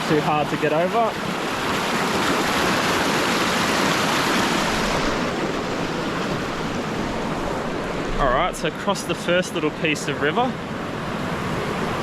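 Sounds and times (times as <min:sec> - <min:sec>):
river rushing over rocks: 0:00.0 - 0:10.3.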